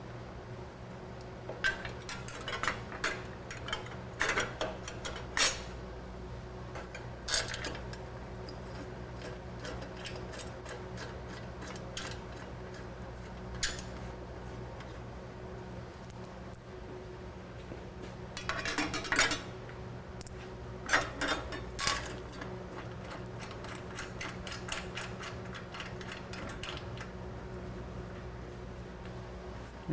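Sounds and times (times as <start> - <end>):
clicks and clinks of hard parts: 1.5 - 5.7, 6.7 - 14.1, 18.4 - 19.5, 20.8 - 27.1.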